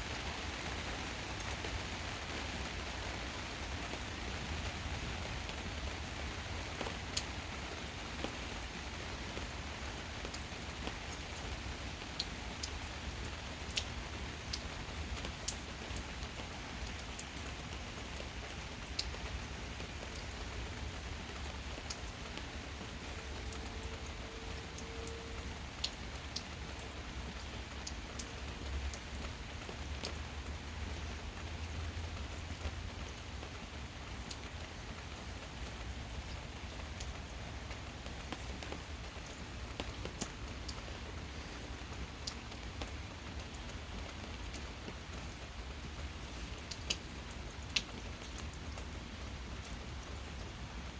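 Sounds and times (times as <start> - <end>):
gentle rain: 0.0 - 50.9
drops dripping and tapping: 38.0 - 49.8.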